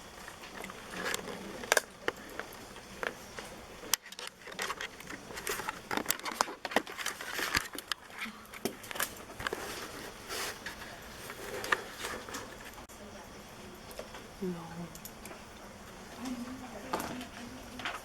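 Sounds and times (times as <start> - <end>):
objects being handled: 0.0 - 12.9.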